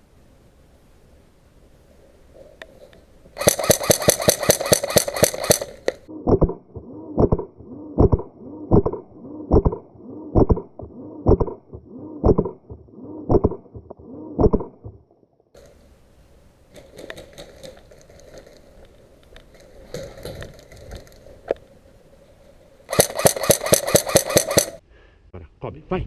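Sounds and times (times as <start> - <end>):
airsoft rifle full-auto burst: 3.4 - 5.9, 22.9 - 24.8.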